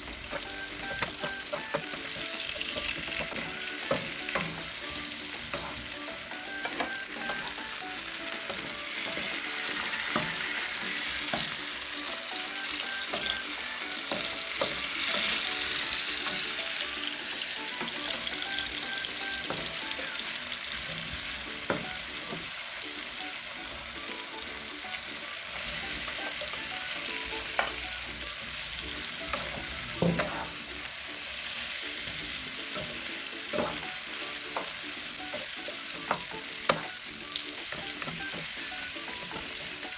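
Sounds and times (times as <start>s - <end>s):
food sizzling in a frying pan: 0.0s - 39.9s
spatula scraping a pan: 6.6s - 11.6s, 29.3s - 30.6s.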